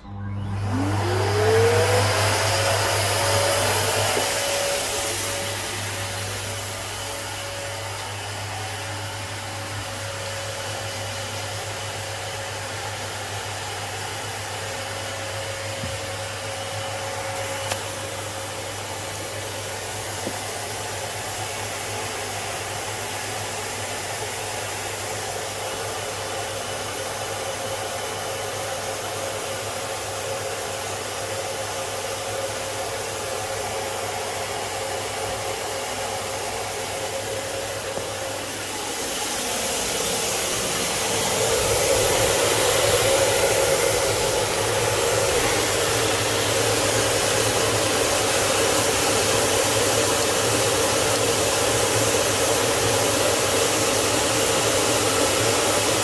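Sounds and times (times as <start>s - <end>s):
electric motor whining: 0.0s - 10.5s, 36.3s - 50.6s.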